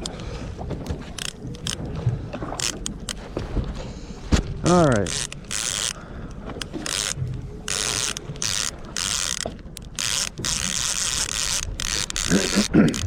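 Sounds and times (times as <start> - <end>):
fishing reel clicking: 1.1 - 1.9, 2.6 - 3.2, 4.7 - 13.0.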